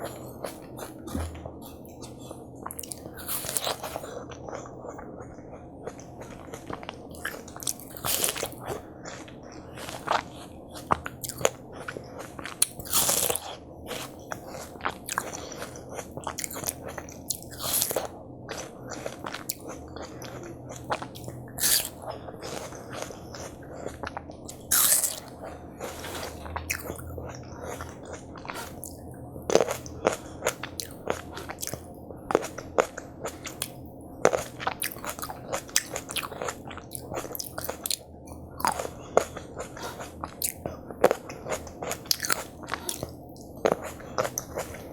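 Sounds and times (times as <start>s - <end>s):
crunchy watermelon bites: 24.5s - 27.0s, 38.6s - 44.8s
chewing clicks: 40.4s - 44.7s.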